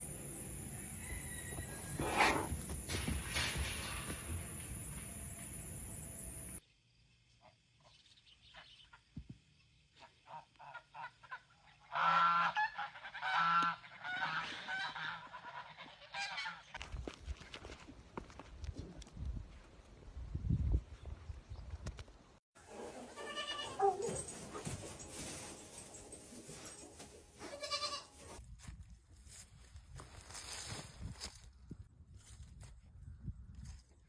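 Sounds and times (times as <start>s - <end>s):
steady hiss: 2.3s - 6.6s.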